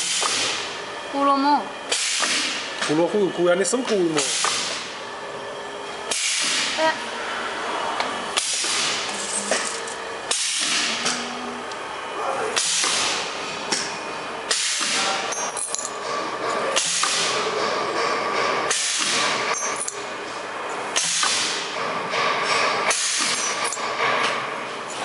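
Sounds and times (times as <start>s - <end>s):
packaging machine running: 7.8s - 25.0s.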